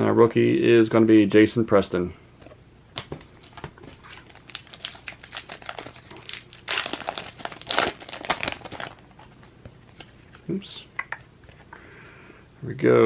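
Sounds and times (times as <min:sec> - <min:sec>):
plastic wrapper crinkling: 0:03.0 - 0:10.5.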